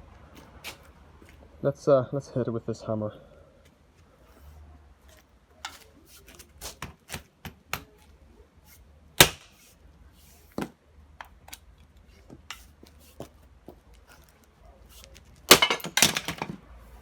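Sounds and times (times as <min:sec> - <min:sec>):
sledgehammer striking a lock: 0:09.2 - 0:09.5, 0:15.5 - 0:16.6.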